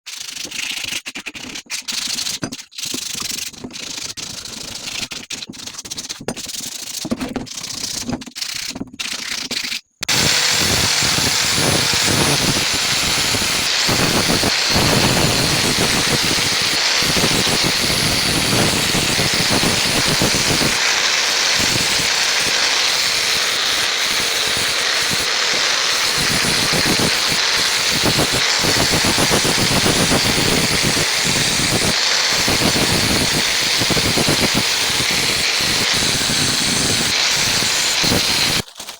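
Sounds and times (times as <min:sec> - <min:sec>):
short workshop noises: 0:06.4 - 0:38.9
loud hissing scraping noise: 0:10.1 - 0:38.6.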